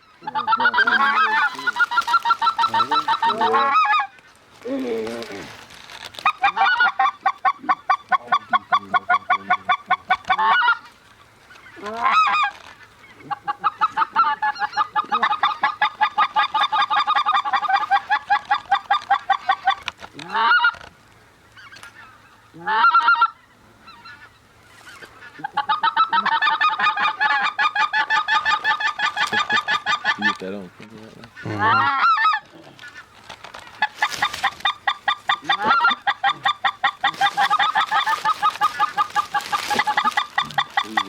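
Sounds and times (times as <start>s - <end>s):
goose honking and clucking: 0.0s - 4.4s, 6.2s - 41.0s.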